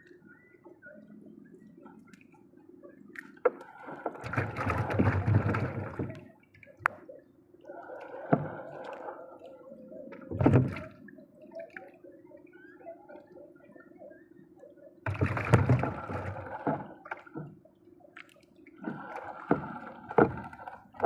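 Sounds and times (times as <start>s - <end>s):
water splashing and sloshing: 0.0s - 13.9s, 14.6s - 21.0s.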